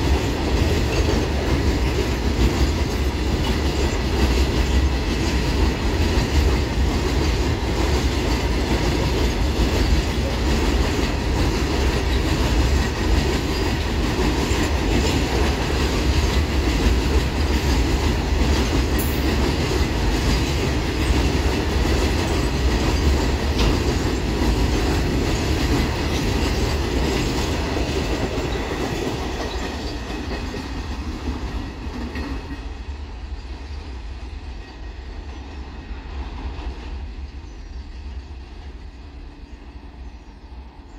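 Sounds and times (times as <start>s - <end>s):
freight wagons clattering on track: 0.0s - 32.7s.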